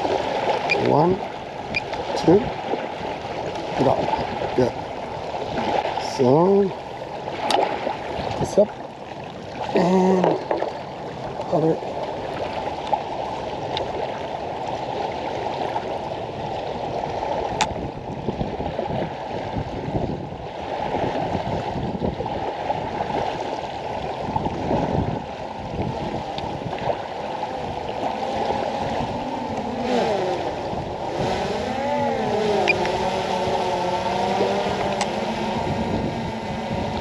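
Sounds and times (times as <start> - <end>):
wavering hum: 0.0 - 14.8, 25.0 - 37.0
wind rumbling on microphone: 0.0 - 37.0.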